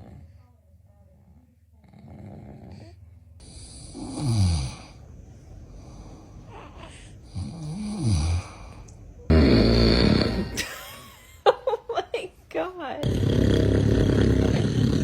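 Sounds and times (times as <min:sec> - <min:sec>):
man snoring loudly: 0:03.4 - 0:05.0, 0:07.3 - 0:08.7, 0:09.3 - 0:10.6, 0:13.0 - 0:15.0.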